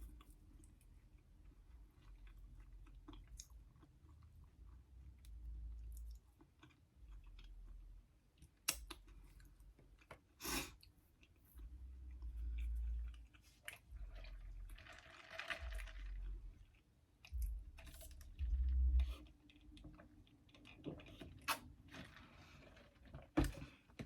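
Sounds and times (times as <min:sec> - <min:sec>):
person chewing food: 0:00.0 - 0:21.7
low thuds: 0:17.4 - 0:19.2.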